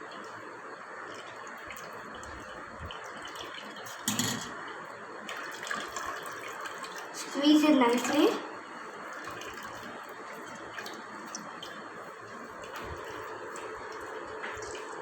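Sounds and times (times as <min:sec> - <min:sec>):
milk trickling through cloth strainer: 0:00.0 - 0:04.0, 0:04.7 - 0:15.0.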